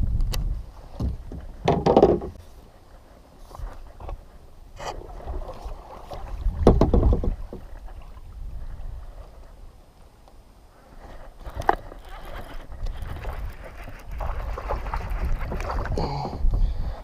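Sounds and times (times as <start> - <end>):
knocks and bumps on a kayak: 0.3 - 2.4, 4.8 - 7.8.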